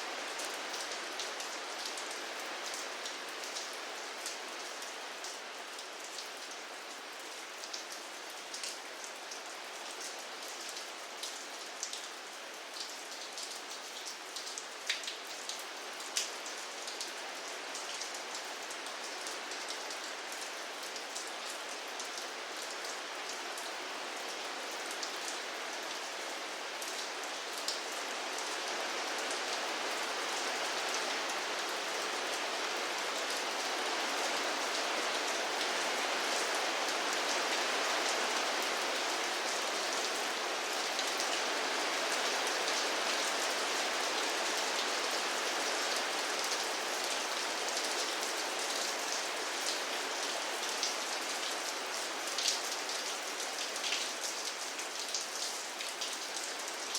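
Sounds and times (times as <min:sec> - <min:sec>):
raindrops pattering on a surface: 0:00.3 - 0:23.6.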